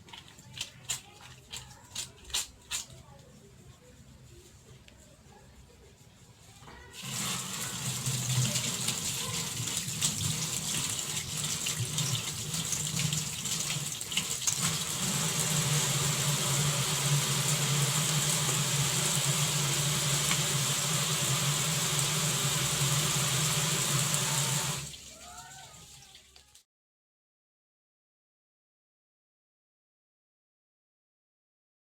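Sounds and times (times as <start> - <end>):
tap water running into sink: 7.0 - 26.2.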